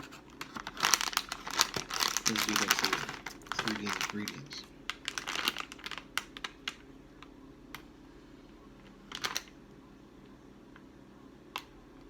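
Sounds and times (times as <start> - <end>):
snack packaging crinkling: 0.0 - 6.9, 9.1 - 9.6.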